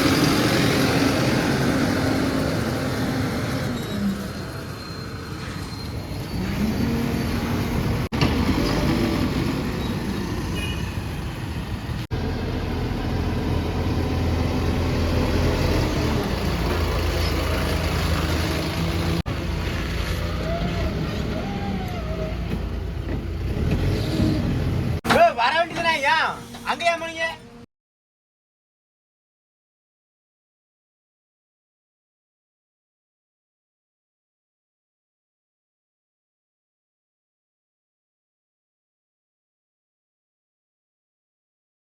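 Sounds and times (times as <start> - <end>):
backhoe loader diesel engine: 0.0 - 27.6
tractor diesel engine: 0.0 - 27.6.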